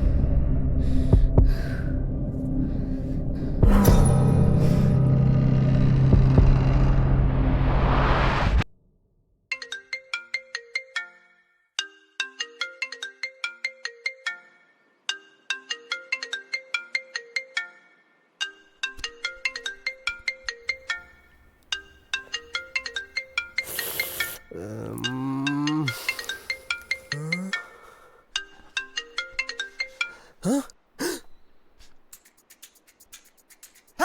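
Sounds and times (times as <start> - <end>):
burst of hiss: 23.6 - 24.4.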